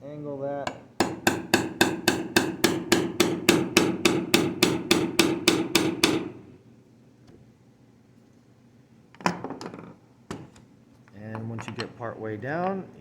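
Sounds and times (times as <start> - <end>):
hammer striking wood chisel: 0.7 - 6.5.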